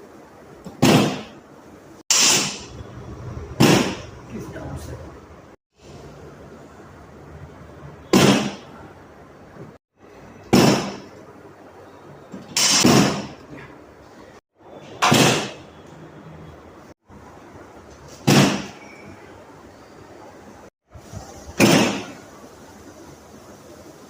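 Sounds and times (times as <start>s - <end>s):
loud thuds of chiropractic thrusts: 0.7s - 1.4s, 3.6s - 4.1s, 8.1s - 8.7s, 10.5s - 11.1s, 12.6s - 13.4s, 15.0s - 15.6s, 18.2s - 18.8s, 21.6s - 22.2s.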